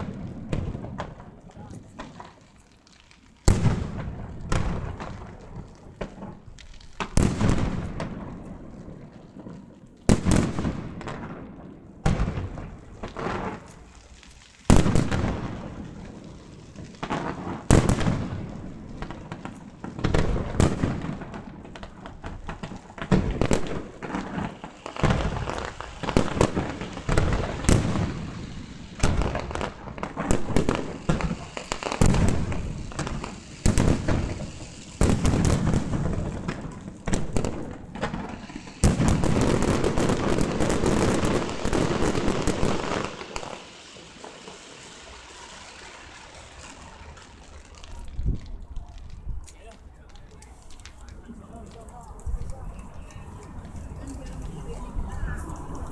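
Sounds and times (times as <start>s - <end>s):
fireworks shells bursting: 19.1s - 47.8s.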